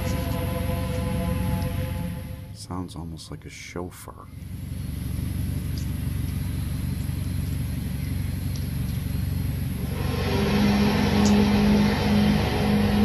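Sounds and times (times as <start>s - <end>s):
held horn-like tone: 0.0s - 2.8s, 9.8s - 13.0s
low rumbling drone: 0.0s - 2.8s, 4.3s - 13.0s.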